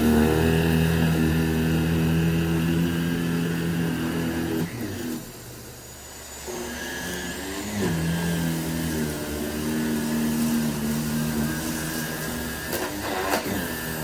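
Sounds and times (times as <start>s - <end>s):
vacuum cleaner humming: 0.0s - 14.0s.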